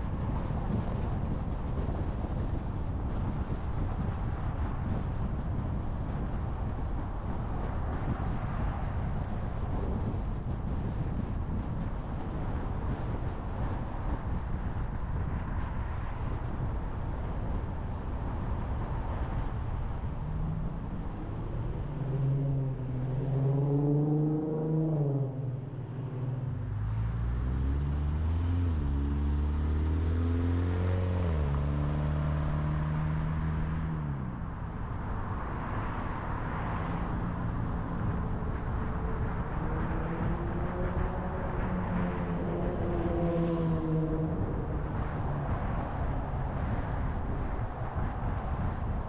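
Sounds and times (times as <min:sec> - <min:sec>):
tyre and road noise: 0:00.0 - 0:49.0
car engine accelerating: 0:20.6 - 0:34.6.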